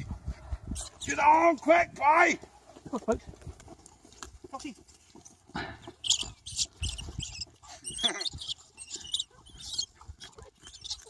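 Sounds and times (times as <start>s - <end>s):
rats squealing: 5.9s - 11.0s.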